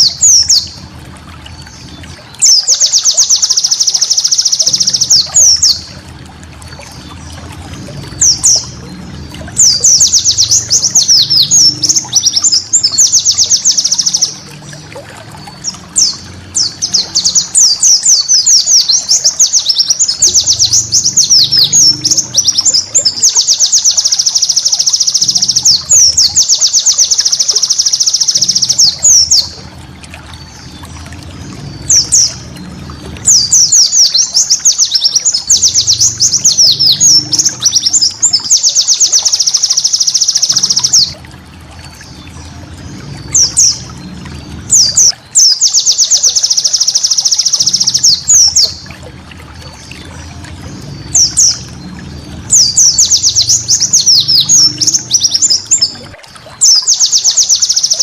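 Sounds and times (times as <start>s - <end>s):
bird singing high chattering notes: 8.2s - 14.5s, 15.4s - 29.7s, 31.6s - 41.2s, 50.8s - 58.0s.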